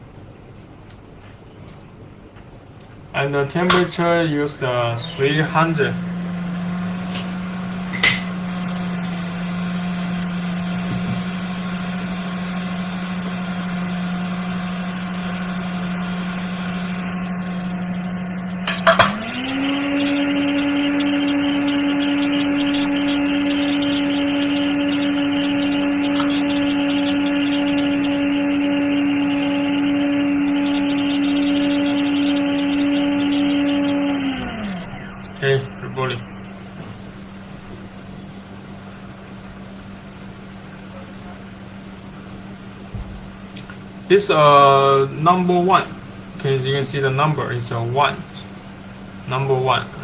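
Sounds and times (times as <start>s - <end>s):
hot-air station motor hum: 0.0s - 50.0s.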